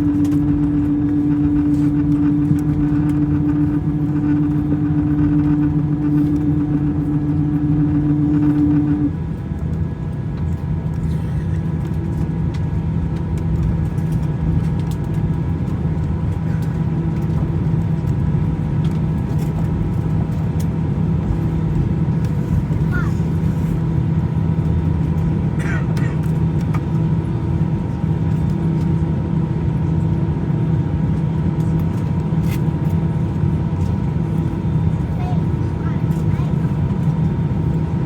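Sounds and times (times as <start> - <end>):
humming tone: 0.0 - 9.4
jet engine and airflow rumble: 0.0 - 38.0.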